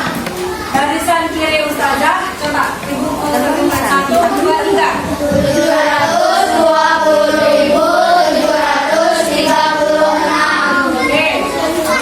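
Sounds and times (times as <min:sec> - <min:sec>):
children chanting in unison: 0:03.2 - 0:12.0.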